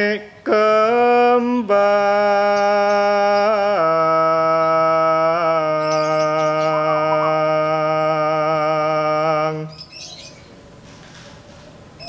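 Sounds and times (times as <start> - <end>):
man singing long held notes: 0.0 - 9.8
faint bird chirps: 2.4 - 3.8, 5.8 - 7.6, 9.7 - 10.6.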